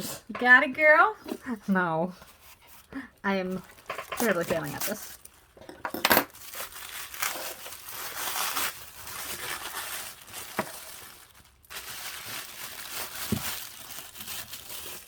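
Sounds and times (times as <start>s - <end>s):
packaging crinkling and rustling: 2.3s - 5.6s, 6.3s - 15.0s.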